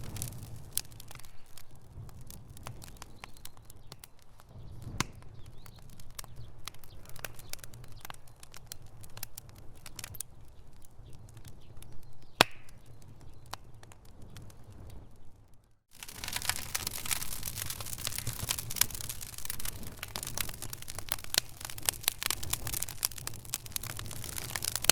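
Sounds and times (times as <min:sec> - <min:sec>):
low rush of flame: 0:00.0 - 0:03.6, 0:13.8 - 0:24.9
wood fire crackling and popping: 0:00.0 - 0:24.9.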